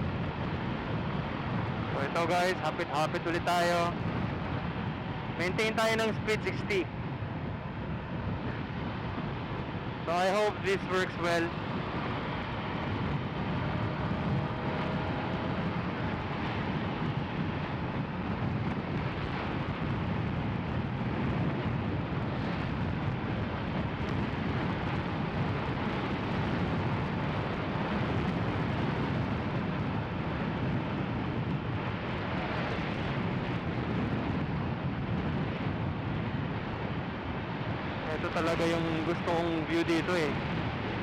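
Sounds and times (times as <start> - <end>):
wind rush: 0.0 - 41.0.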